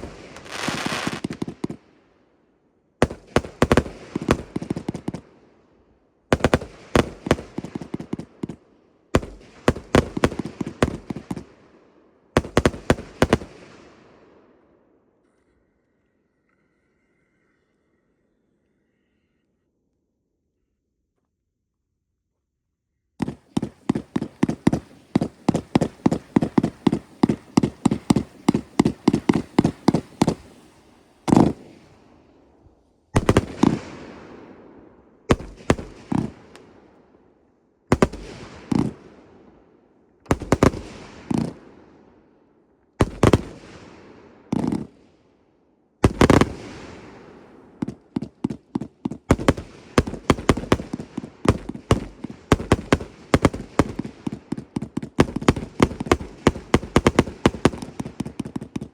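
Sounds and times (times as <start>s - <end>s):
firework bangs: 0.0s - 1.8s, 3.0s - 5.3s, 6.3s - 8.6s, 9.2s - 11.6s, 12.4s - 13.9s, 23.2s - 32.6s, 33.2s - 34.6s, 35.3s - 36.8s, 37.9s - 39.2s, 40.3s - 41.7s, 43.0s - 45.0s, 46.0s - 58.9s
firework cake volley: 0.0s - 2.0s, 3.0s - 5.6s, 6.3s - 14.4s, 23.2s - 37.1s, 37.9s - 39.6s, 40.3s - 42.1s, 43.0s - 45.2s, 46.0s - 58.9s.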